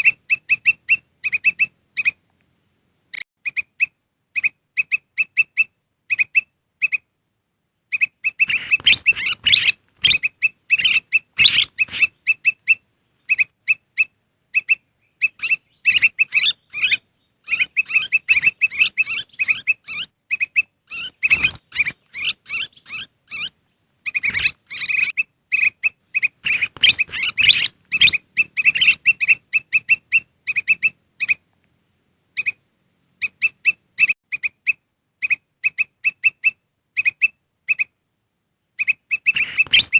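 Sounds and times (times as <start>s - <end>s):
bulbuls chirping: 0.0s - 2.3s, 7.9s - 31.5s, 32.3s - 37.9s, 38.8s - 39.9s
birds chattering together: 7.9s - 31.4s, 38.8s - 39.9s.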